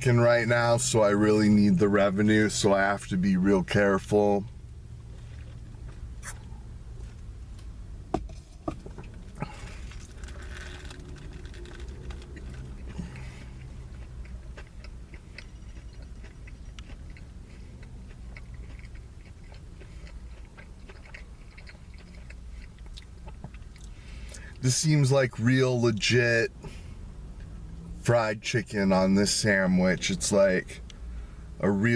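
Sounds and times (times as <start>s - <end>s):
steady low hum: 0.0s - 31.9s
person chewing crispy food: 9.0s - 24.6s.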